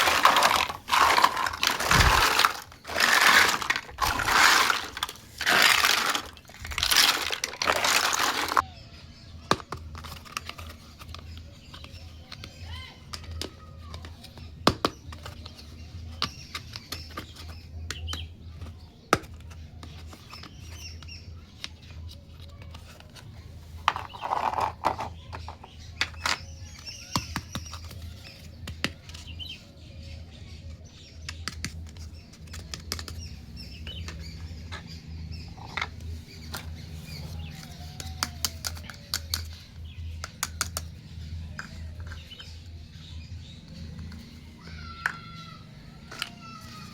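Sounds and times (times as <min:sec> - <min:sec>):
plastic toy pieces clicking: 0:00.0 - 0:08.6, 0:23.9 - 0:28.0, 0:37.5 - 0:41.0.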